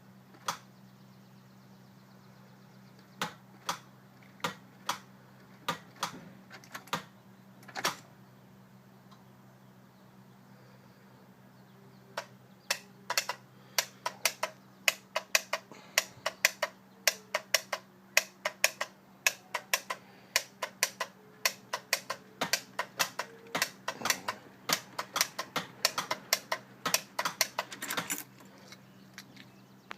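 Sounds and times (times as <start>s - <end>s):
starter clicking: 12.1s - 29.9s.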